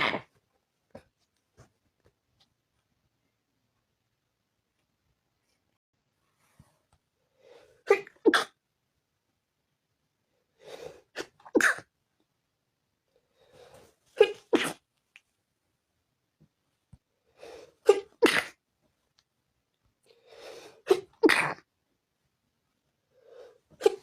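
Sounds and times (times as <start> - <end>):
person sneezing: 0.0 - 0.3, 7.8 - 8.6, 11.1 - 11.9, 14.1 - 14.8, 17.8 - 18.6, 20.6 - 21.7, 23.7 - 24.0
breathy catch before sneeze: 23.7 - 24.0.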